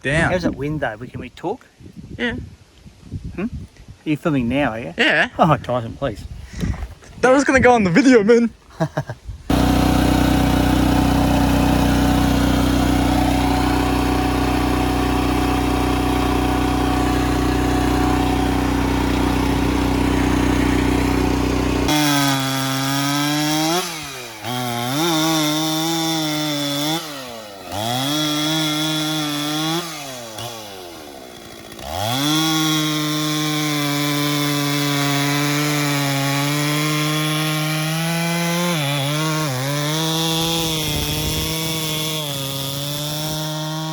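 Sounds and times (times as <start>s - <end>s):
chainsaw cutting log: 9.5s - 43.9s.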